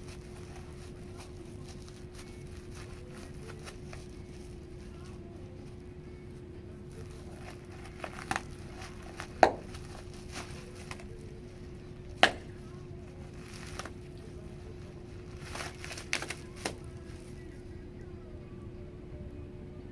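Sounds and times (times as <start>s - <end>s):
bubble wrap crinkling: 0.0s - 17.8s
steady hum: 0.0s - 19.9s
bubble wrap pops: 6.9s - 17.4s.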